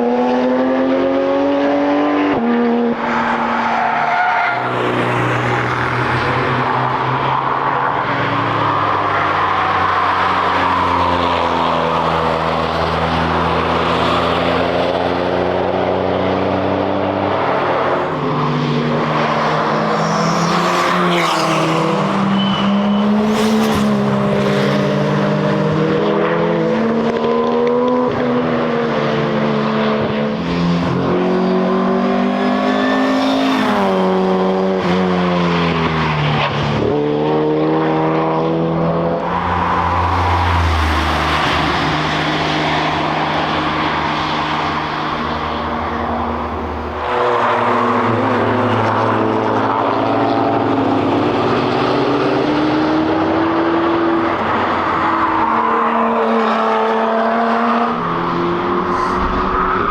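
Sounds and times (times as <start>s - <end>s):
race cars driving past: 0.0s - 59.9s
tyre and road noise: 2.7s - 59.9s.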